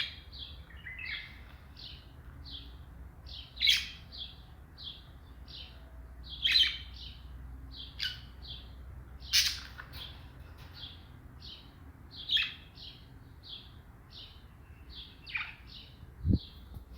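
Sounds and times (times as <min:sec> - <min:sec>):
birds chirping: 0:00.0 - 0:16.9
sharp bird calls: 0:00.0 - 0:16.9.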